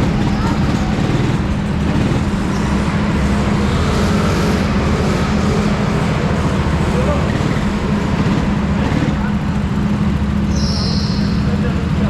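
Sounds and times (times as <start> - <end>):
go-kart engine running: 0.0 - 12.0.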